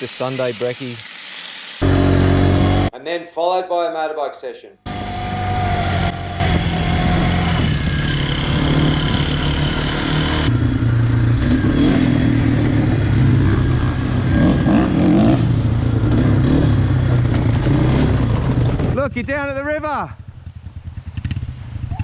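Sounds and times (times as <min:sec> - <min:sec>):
motorbike engine revving: 0:01.8 - 0:02.9, 0:04.9 - 0:19.0, 0:20.2 - 0:22.0.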